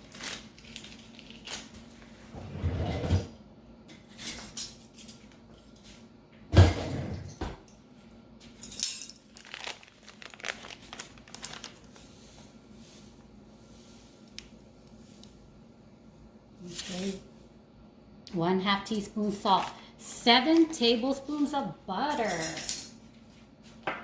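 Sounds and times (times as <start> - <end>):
kitchen utensils clinking: 22.1 - 23.0.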